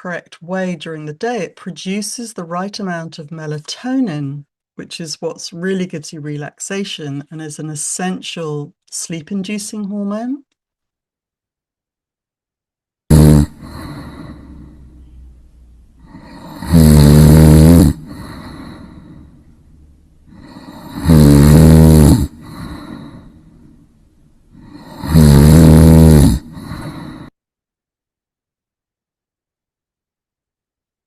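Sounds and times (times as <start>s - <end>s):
person snoring loudly: 13.1s - 15.0s, 16.0s - 19.4s, 20.3s - 23.4s, 24.6s - 27.3s
soft breath out: 13.6s - 15.2s, 18.0s - 19.6s, 22.4s - 23.8s, 26.4s - 27.3s.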